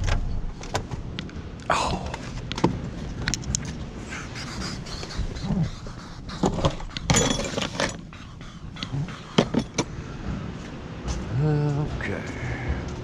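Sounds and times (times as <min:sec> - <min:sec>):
low vehicle rumble: 0:00.0 - 0:13.0
scrap metal clinking: 0:07.1 - 0:08.0.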